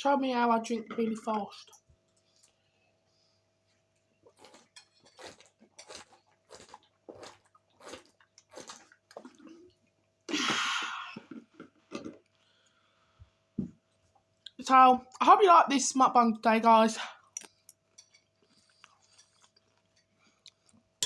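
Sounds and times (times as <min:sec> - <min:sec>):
person gulping juice: 0:05.3 - 0:12.4.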